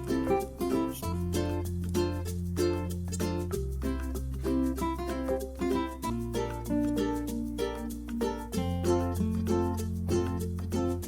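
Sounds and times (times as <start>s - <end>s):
steady bass line: 0.0s - 11.0s
upbeat plucked-string tune: 0.0s - 11.0s.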